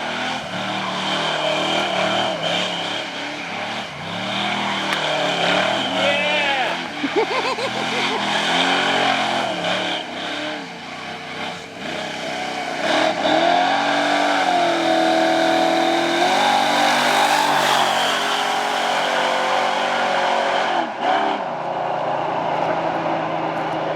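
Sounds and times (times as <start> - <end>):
tires spinning: 0.0 - 23.9
truck engine revving hard: 0.0 - 23.9.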